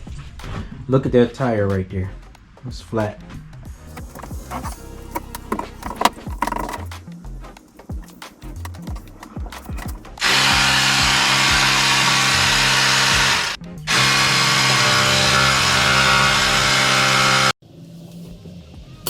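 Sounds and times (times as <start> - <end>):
clicks and knocks: 3.9 - 6.9
air compressor motor buzzing: 9.7 - 17.6.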